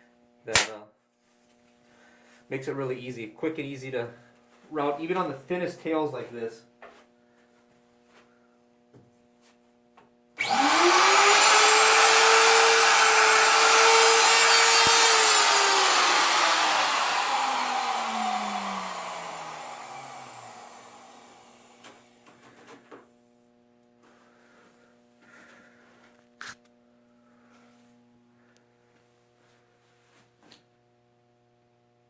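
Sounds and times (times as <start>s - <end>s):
router motor whine: 10.4s - 22.2s.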